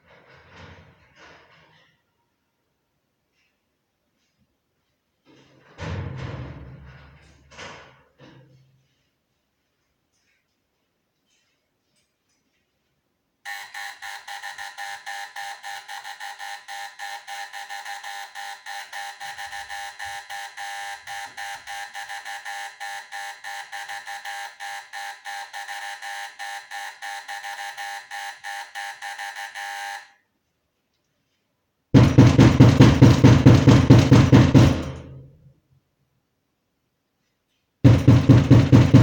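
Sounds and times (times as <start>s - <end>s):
electronic alarm buzzer pulsing: 13.5s - 30.2s, 37.9s - 39.0s.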